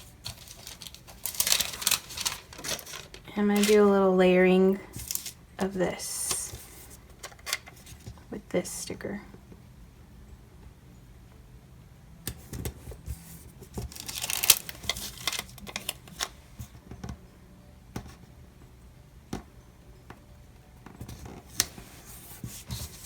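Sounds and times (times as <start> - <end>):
paper stickers rustling: 0.0 - 4.2, 4.9 - 8.1, 13.2 - 16.4.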